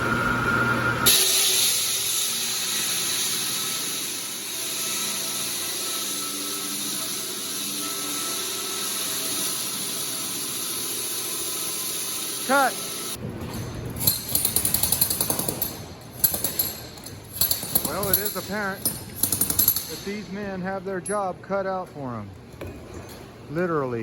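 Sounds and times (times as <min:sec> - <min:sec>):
concrete saw grinding: 0:01.0 - 0:13.2, 0:14.0 - 0:20.2.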